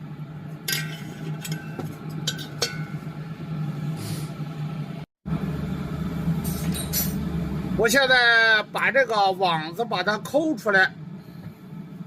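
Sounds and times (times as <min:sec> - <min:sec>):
steady low hum: 0:00.0 - 0:12.0
tool clinking on metal: 0:00.7 - 0:03.0.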